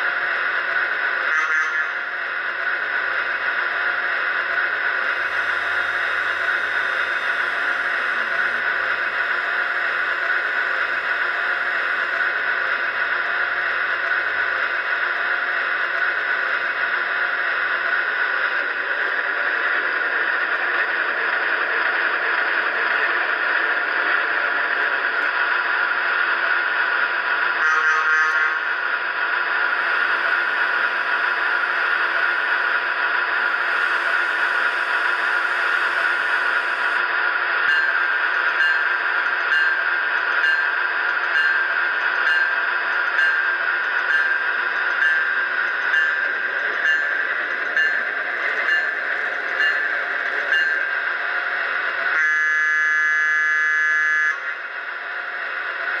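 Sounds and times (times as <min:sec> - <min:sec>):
steady electric hum: 0:00.0 - 0:56.0
train horn: 0:01.3 - 0:02.1, 0:27.6 - 0:28.7, 0:52.2 - 0:54.5.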